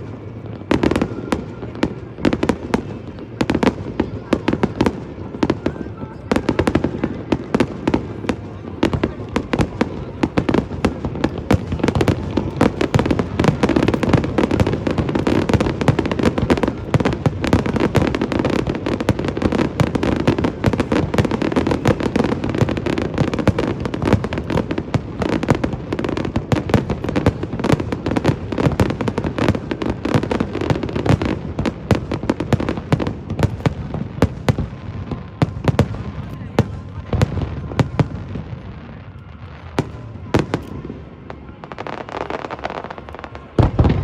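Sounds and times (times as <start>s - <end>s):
fireworks booms and crackling: 0.0s - 44.0s.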